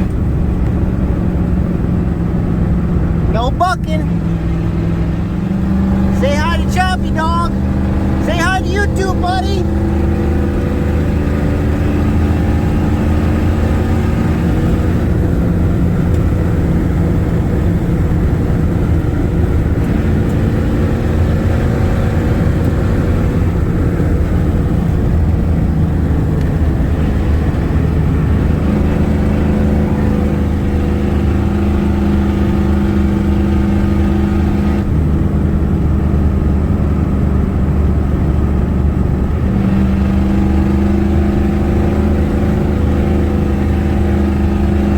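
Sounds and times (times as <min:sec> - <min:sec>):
diesel truck engine driving: 0:00.0 - 0:44.9.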